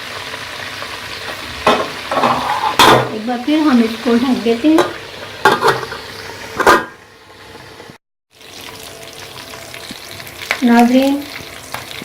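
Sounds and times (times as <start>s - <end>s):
chicken sizzling in hot oil: 0.0s - 12.0s
metal clattering knocks: 1.6s - 3.2s.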